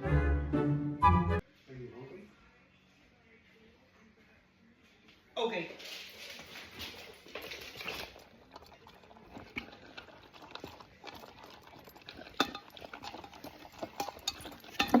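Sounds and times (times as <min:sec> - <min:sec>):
dog chewing: 0:06.6 - 0:15.0.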